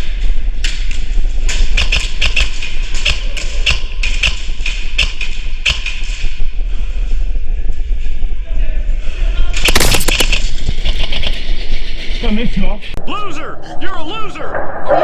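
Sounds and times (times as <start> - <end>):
sharp clicks and snaps: 0.6 - 6.4, 9.6 - 11.2
low rumble: 6.2 - 15.0.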